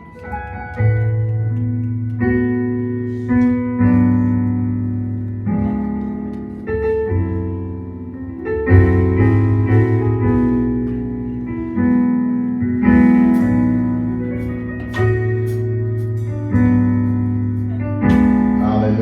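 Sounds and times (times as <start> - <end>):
keyboard playing slow chords: 0.0 - 19.0.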